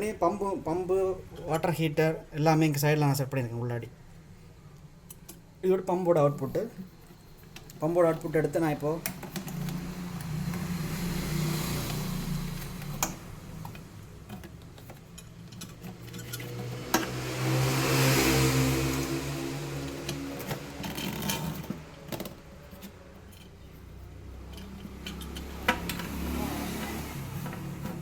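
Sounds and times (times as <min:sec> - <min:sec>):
aquarium water pump humming: 0:08.4 - 0:14.4, 0:16.0 - 0:23.2, 0:24.1 - 0:28.0
fittings clicking: 0:24.4 - 0:26.1.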